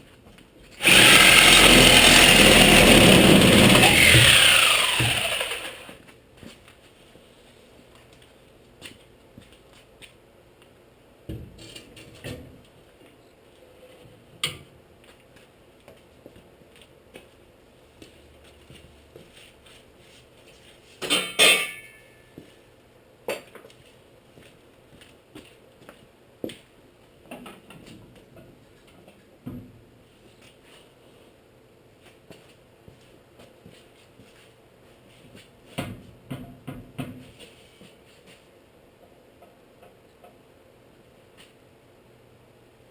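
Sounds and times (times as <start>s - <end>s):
power tool spinning down: 0.8s - 6.0s.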